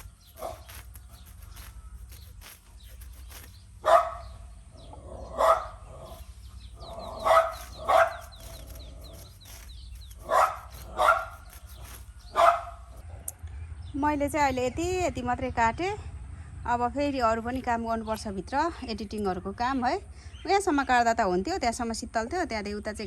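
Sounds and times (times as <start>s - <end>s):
dog barking: 3.8s - 4.4s, 5.2s - 6.1s, 7.0s - 8.4s, 10.2s - 11.5s, 12.3s - 12.8s.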